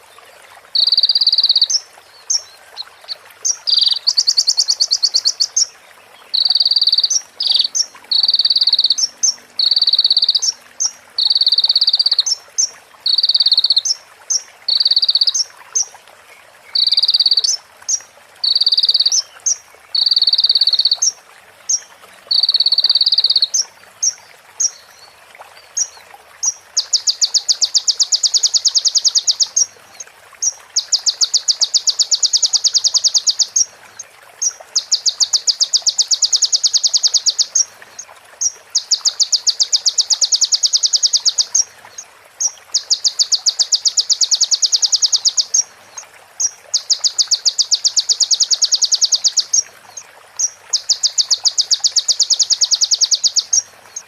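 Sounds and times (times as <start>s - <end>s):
bird rapid ticking trills: 0.8s - 2.6s, 3.4s - 5.7s, 6.3s - 15.9s, 16.8s - 21.1s, 25.8s - 29.7s, 30.7s - 33.7s, 34.4s - 37.7s, 38.4s - 41.7s, 42.4s - 45.7s, 46.4s - 49.6s, 50.4s - 54.0s.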